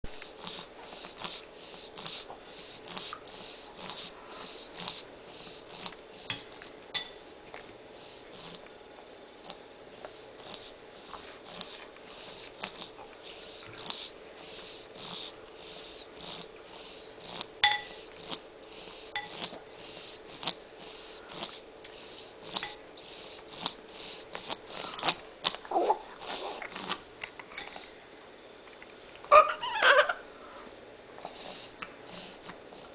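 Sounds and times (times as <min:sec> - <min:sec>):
faint steady hum: 0:00.1 - 0:32.9.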